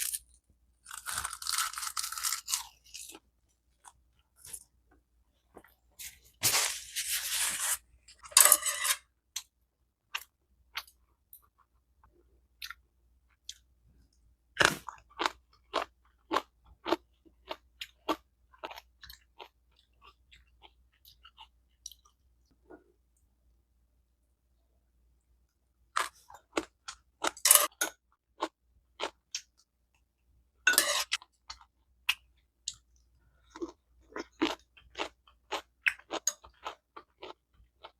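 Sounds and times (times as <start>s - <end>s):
person chewing crunchy food: 0.0s - 4.7s, 14.6s - 22.9s, 33.4s - 37.9s.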